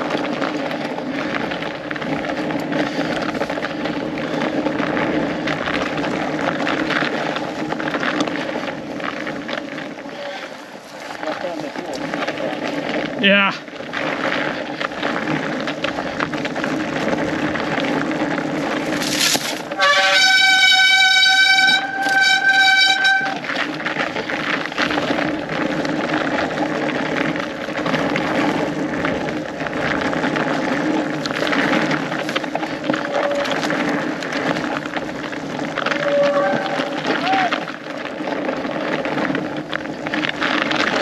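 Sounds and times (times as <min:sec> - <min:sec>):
bike tyre and drivetrain rattle: 0:00.0 - 0:41.0.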